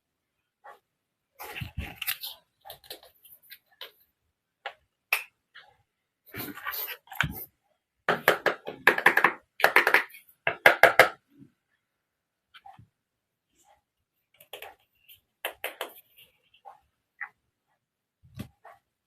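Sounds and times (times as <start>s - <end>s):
toy pieces tapping and clicking: 8.2s - 11.2s.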